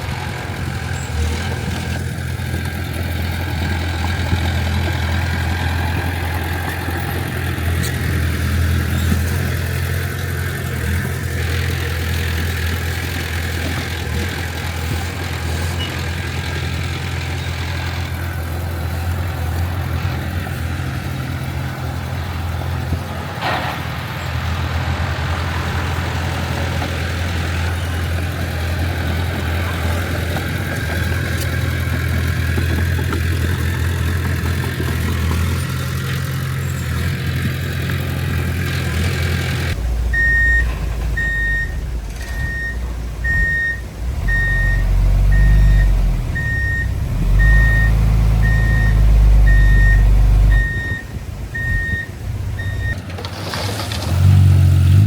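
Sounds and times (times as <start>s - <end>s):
deep truck engine: 0.0s - 55.0s
heavy diesel engine running: 0.0s - 55.0s
reversing alarm beeping: 40.1s - 53.0s.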